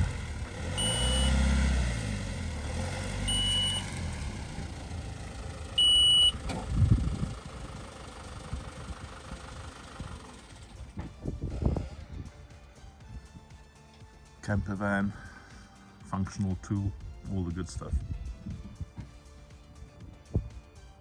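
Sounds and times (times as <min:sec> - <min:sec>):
van engine running: 0:00.0 - 0:21.0
reversing alarm beeps: 0:00.7 - 0:01.5, 0:03.3 - 0:04.0, 0:05.8 - 0:06.4.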